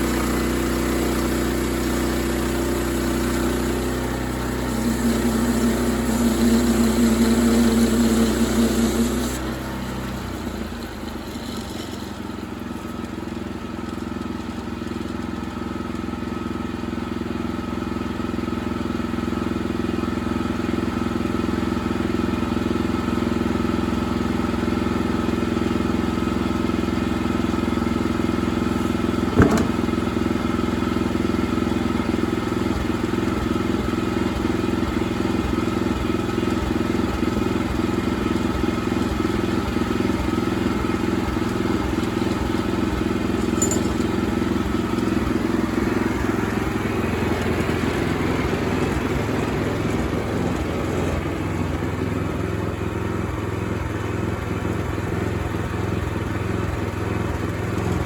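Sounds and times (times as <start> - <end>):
sawmill engine running: 0.0 - 58.0
sharp knock: 29.4 - 30.1.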